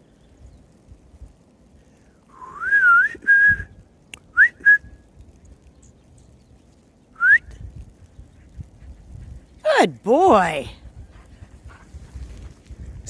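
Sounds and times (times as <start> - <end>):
person whistling for a dog: 2.4 - 3.7, 4.4 - 4.9, 7.2 - 7.5.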